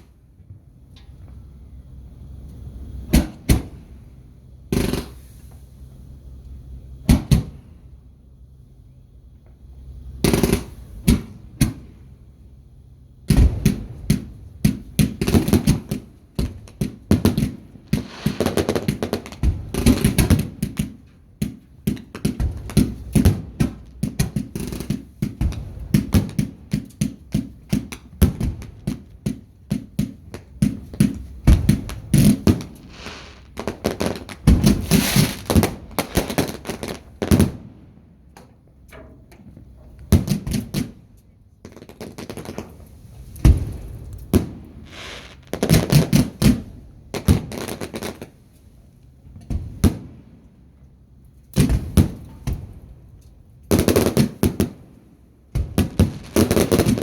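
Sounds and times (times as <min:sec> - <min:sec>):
fireworks banging: 0:02.9 - 0:04.0, 0:04.7 - 0:05.7, 0:07.1 - 0:07.8, 0:13.3 - 0:48.4, 0:49.3 - 0:50.4, 0:51.6 - 0:53.0, 0:53.7 - 0:57.0.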